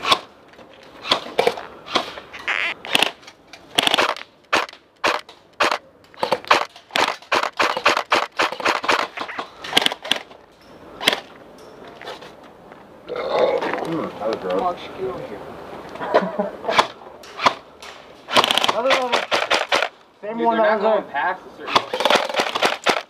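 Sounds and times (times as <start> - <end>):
airsoft gun shots: 2.9 - 10.2, 18.3 - 19.9, 21.7 - 23.0.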